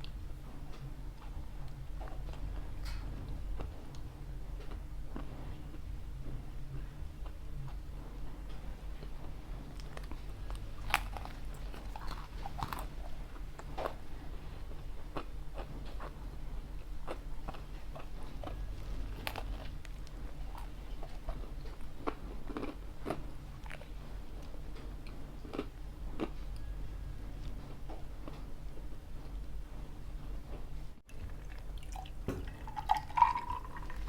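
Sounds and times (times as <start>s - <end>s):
person chewing pizza: 0.0s - 8.2s, 9.0s - 26.8s.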